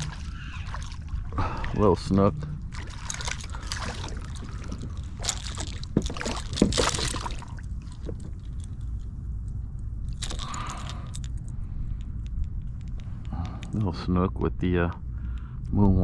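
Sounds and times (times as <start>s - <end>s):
water splashing and sloshing: 0.0s - 11.6s.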